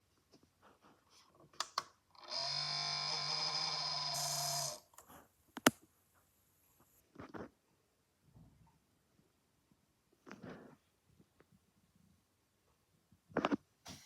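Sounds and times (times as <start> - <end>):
computer grinding noise: 2.2 - 5.0.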